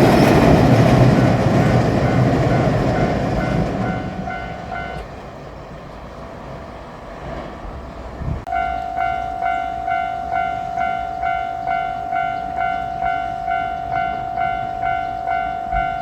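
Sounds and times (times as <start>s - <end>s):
rushing rumble: 0.0s - 9.8s
level crossing bell ringing: 8.5s - 16.0s.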